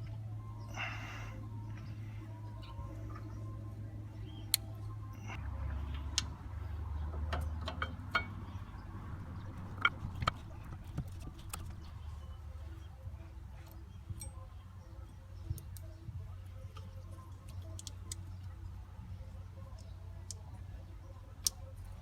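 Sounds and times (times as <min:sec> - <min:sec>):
low hum: 0:00.0 - 0:22.0
clicks and metallic taps: 0:07.3 - 0:08.6.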